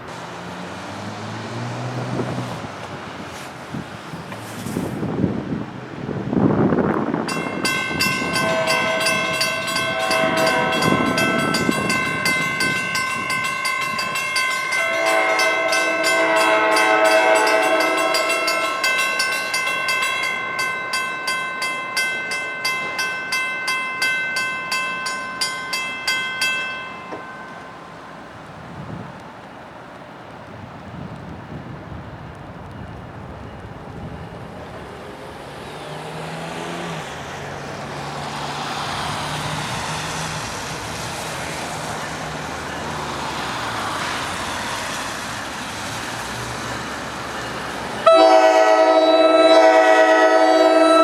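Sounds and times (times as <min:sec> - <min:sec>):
train wheels clicking over rail joints: 0:06.9 - 0:28.5
train horn: 0:08.0 - 0:12.0, 0:14.7 - 0:19.6, 0:48.0 - 0:51.0.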